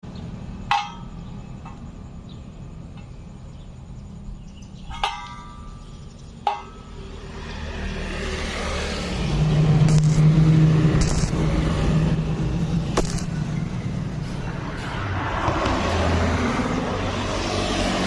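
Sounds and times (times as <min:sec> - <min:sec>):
metal clanking on metal: 0:00.6 - 0:01.9, 0:04.8 - 0:07.1.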